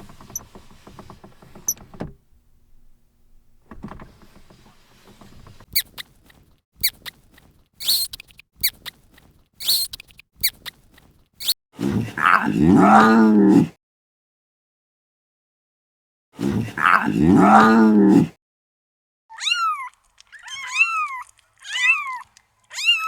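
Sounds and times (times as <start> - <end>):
dog yipping: 7.8 - 9.0, 9.6 - 10.8, 19.3 - 23.0.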